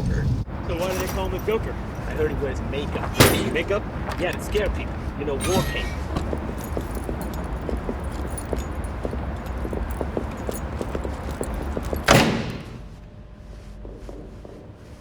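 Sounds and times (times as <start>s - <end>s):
small metallic clinks and rattles: 0.6s - 12.4s.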